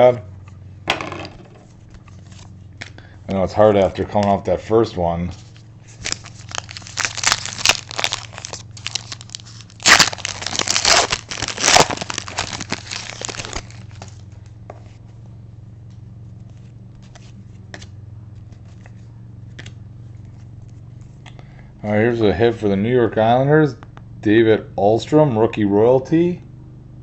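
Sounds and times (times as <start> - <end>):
wrapper tearing and crinkling: 5.5 - 14.3.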